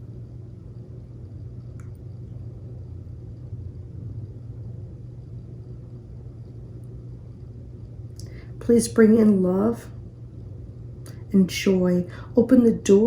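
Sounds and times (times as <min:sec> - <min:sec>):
low background hum: 0:00.0 - 0:13.0
faint click: 0:01.7 - 0:02.0.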